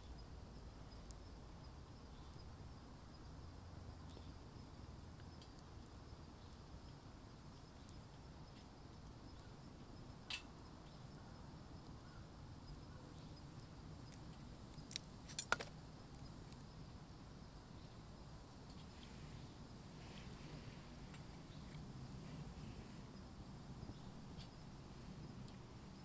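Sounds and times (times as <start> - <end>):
campfire hissing: 13.4 - 26.0.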